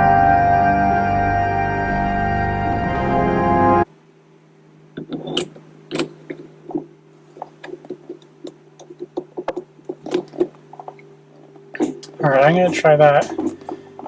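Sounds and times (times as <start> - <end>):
organ music: 0.0 - 3.9
steady low hum: 0.0 - 14.0.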